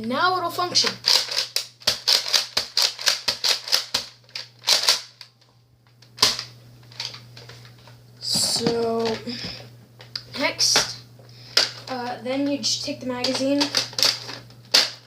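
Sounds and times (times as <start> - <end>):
toy blaster plastic clicks: 1.0 - 5.3.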